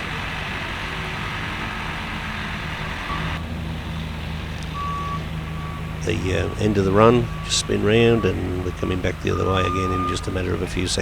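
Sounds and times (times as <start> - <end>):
loader engine running: 0.0 - 11.0
reversing alarm beep: 3.1 - 3.4, 4.7 - 11.0.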